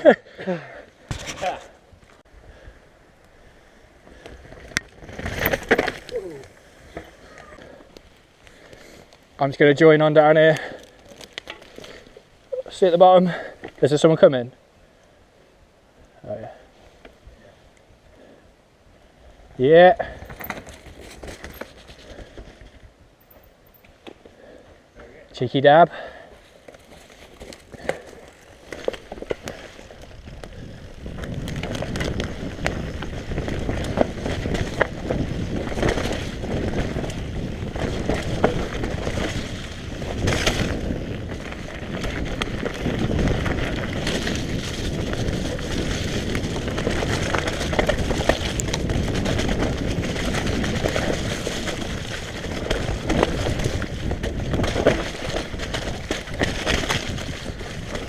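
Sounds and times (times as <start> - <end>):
bike tyres over dirt and rocks: 0.0 - 14.6, 16.2 - 58.0
wind on microphone: 30.0 - 58.0.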